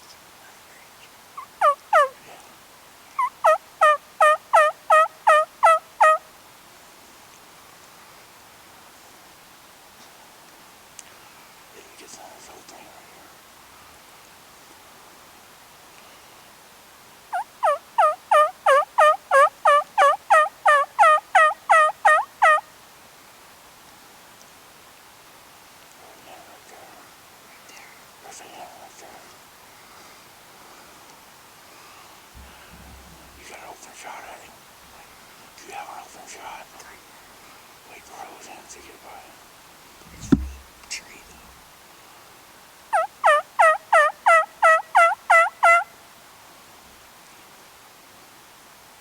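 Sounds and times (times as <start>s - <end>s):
turkey yelping: 1.4s - 2.1s, 3.2s - 6.2s, 17.3s - 22.6s, 43.0s - 45.9s.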